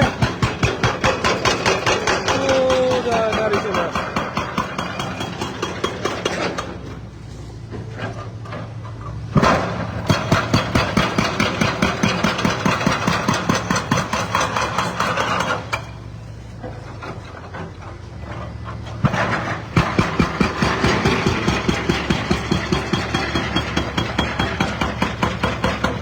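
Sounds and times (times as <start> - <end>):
concrete breaker hammering: 0.0 - 6.9, 9.4 - 16.0, 19.0 - 26.0
heavy machine engine running: 0.0 - 26.0.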